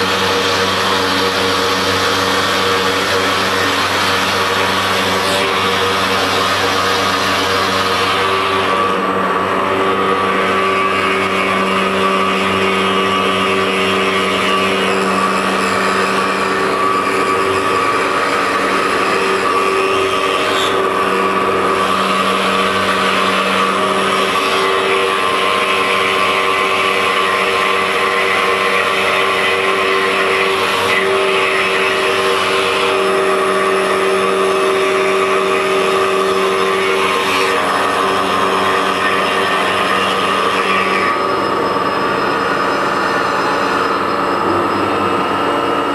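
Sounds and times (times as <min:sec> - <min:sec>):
cnc machine motor whine: 0:00.0 - 0:45.9.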